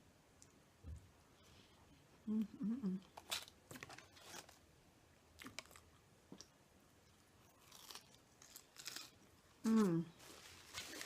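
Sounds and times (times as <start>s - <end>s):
food crunching: 5.4s - 6.5s, 7.4s - 9.8s
person chewing food: 5.4s - 9.4s.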